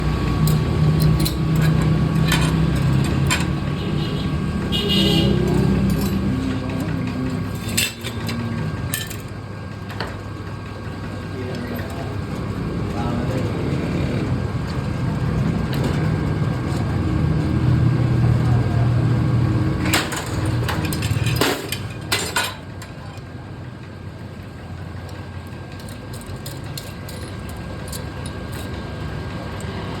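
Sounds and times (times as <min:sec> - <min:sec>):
lathe running: 0:00.0 - 0:09.8
lathe running with low hum: 0:00.0 - 0:30.0
wire clanking against metal: 0:00.4 - 0:03.6, 0:05.0 - 0:09.2, 0:19.8 - 0:22.9, 0:25.7 - 0:28.8.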